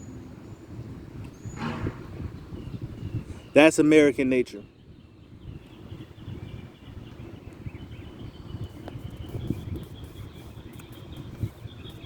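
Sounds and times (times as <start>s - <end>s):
steady low rumble: 7.4s - 12.0s.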